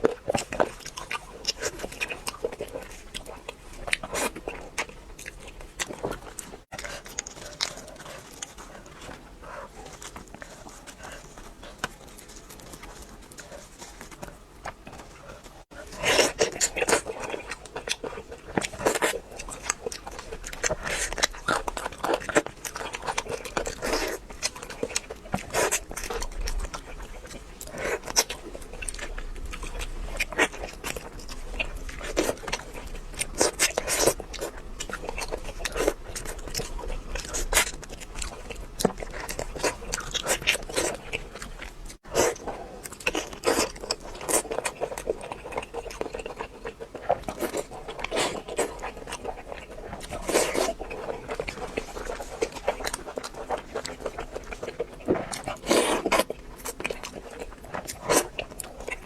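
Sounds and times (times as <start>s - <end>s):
crunching and chewing fried food: 0.0s - 59.0s.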